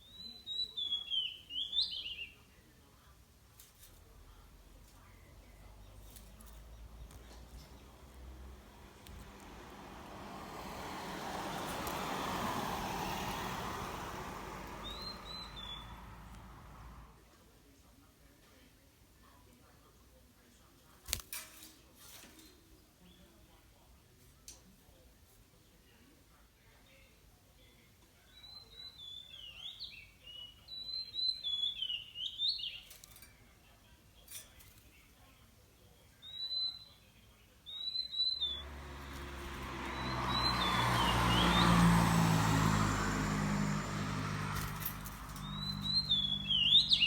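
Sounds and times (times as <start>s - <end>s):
bird chirps: 0.0s - 2.5s, 13.0s - 16.9s, 28.2s - 33.0s, 36.2s - 47.0s
vehicle passing by: 4.4s - 17.2s, 38.1s - 47.0s.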